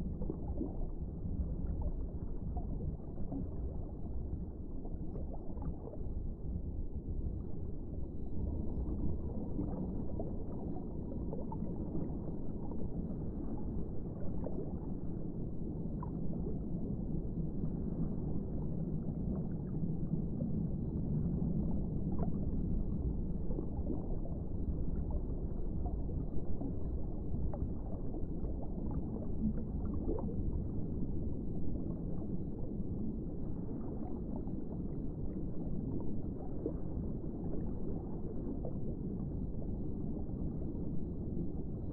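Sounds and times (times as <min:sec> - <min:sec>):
underwater low rumble: 0:00.0 - 0:41.9.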